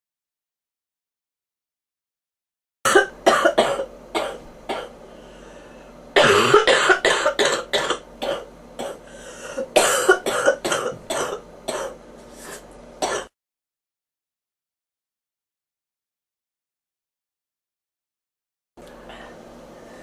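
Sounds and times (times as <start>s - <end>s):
person coughing: 2.9s - 5.0s, 6.2s - 13.4s.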